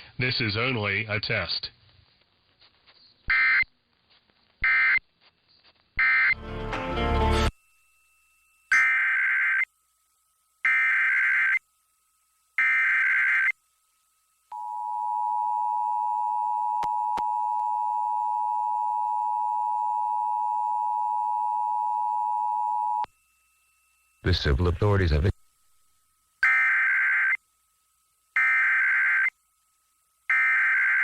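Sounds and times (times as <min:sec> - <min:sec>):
digital header data bursts: 0:03.3 - 0:03.6, 0:04.6 - 0:05.0, 0:10.6 - 0:11.6, 0:12.6 - 0:13.6, 0:24.2 - 0:25.4.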